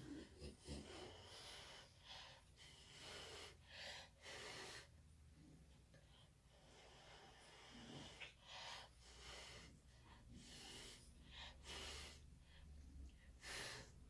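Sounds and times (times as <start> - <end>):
faint breath puffs: 6.0 - 14.0.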